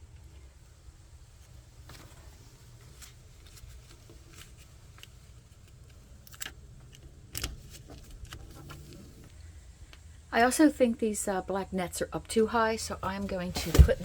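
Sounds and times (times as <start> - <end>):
low steady hum: 0.0 - 14.0
hands rustling paper: 1.4 - 9.4.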